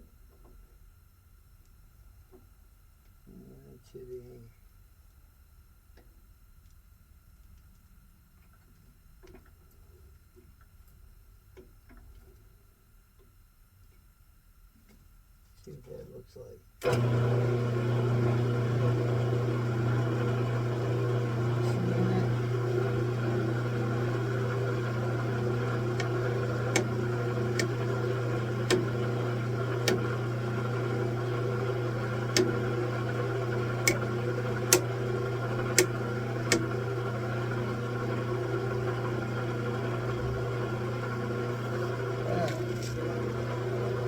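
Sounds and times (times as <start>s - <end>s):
metal lathe running: 16.8s - 44.0s.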